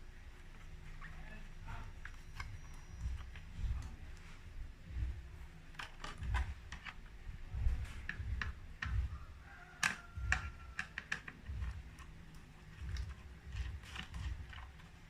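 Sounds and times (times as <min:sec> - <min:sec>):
clicks and taps on plastic panels: 0:07.8 - 0:14.8.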